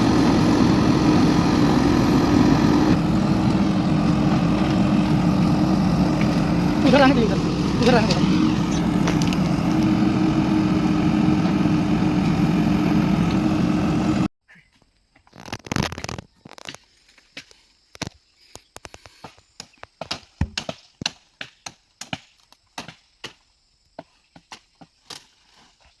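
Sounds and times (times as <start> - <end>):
machine engine running: 0.0 - 14.3.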